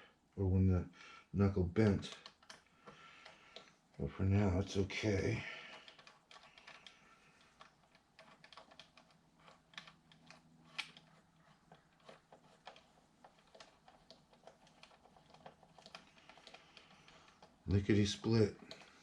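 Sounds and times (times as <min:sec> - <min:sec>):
small parts being handled: 0:05.7 - 0:19.0.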